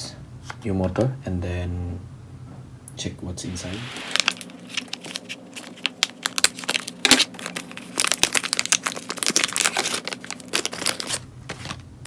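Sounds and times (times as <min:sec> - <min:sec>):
packaging crinkling and rustling: 0:03.8 - 0:11.9.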